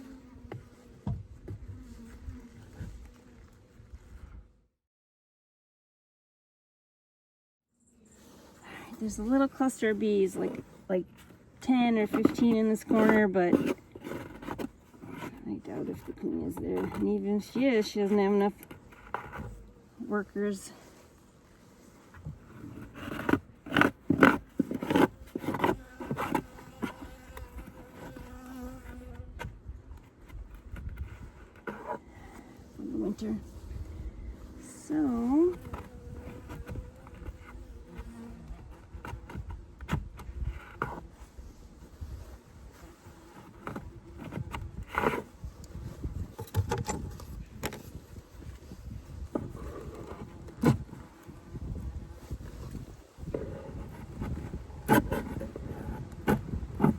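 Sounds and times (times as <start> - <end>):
honeybee buzzing: 0.0 - 3.9, 7.8 - 56.9
wooden hive frames knocking: 0.4 - 1.8, 11.9 - 19.7, 52.2 - 56.9
sharp knocks and scrapes: 8.2 - 21.0, 21.6 - 32.5, 35.0 - 56.9.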